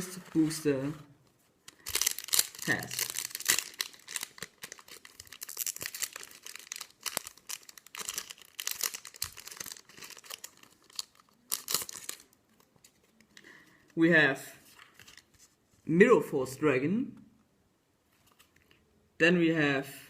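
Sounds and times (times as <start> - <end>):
foil pack tearing and crinkling: 1.7 - 12.3.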